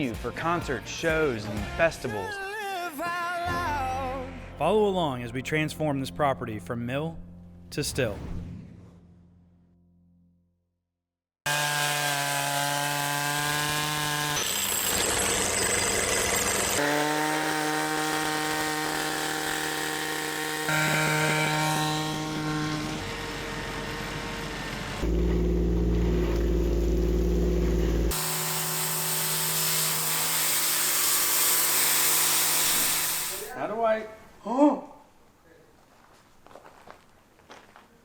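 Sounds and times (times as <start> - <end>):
power tools whining: 11.5 - 33.5.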